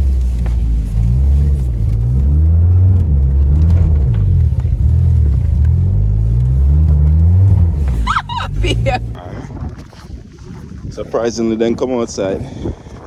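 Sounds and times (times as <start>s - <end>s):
car engine revving: 0.0s - 9.2s.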